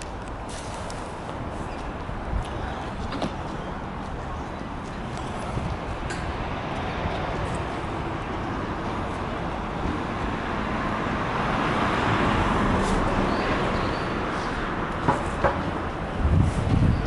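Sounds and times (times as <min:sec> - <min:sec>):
road traffic passing: 0:00.0 - 0:17.0.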